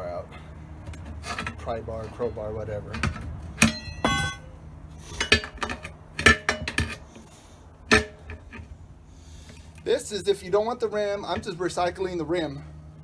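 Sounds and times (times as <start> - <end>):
crowbars clanking on metal rim: 0.3 - 7.3, 7.9 - 8.8.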